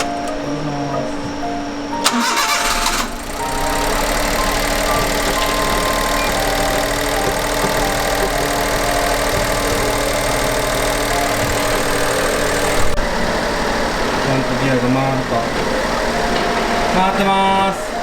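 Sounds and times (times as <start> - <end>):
engine starter cranking: 0.0 - 1.1, 1.9 - 13.0
car engine idling: 0.0 - 18.0.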